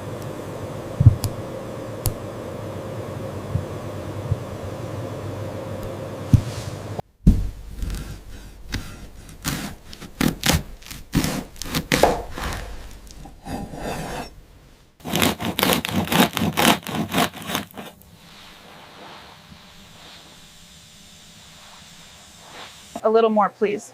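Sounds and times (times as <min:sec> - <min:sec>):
rasping strokes: 0:07.8 - 0:14.4, 0:15.0 - 0:20.3.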